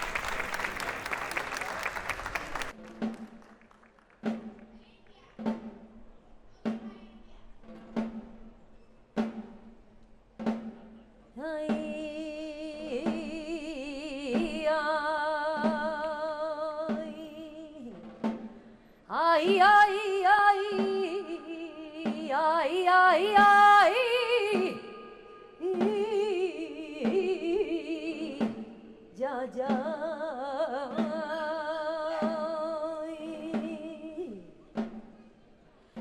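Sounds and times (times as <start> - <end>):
steady drum beat: 5.4 - 36.0
person singing with wide vibrato: 18.7 - 34.7.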